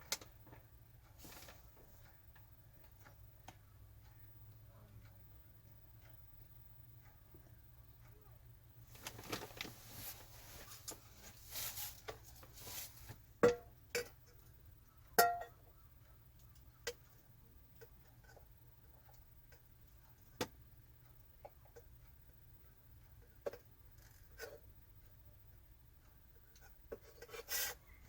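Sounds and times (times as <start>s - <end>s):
rustling: 1.2s - 1.9s, 8.9s - 13.2s.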